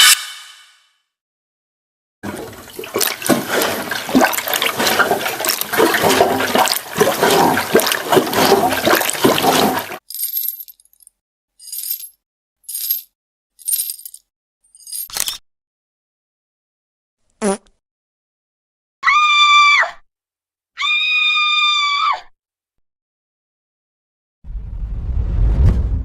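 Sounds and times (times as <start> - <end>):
rushing splashing water: 2.2 - 10.0.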